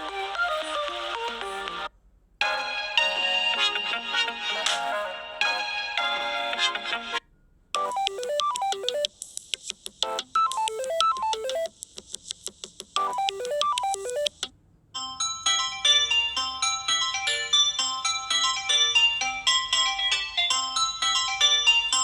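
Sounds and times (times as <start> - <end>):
bright ringtone melody: 0.0 - 7.2, 7.8 - 9.1, 10.0 - 11.7, 13.0 - 14.4, 15.0 - 22.0
ringtone falling note run: 13.0 - 14.3.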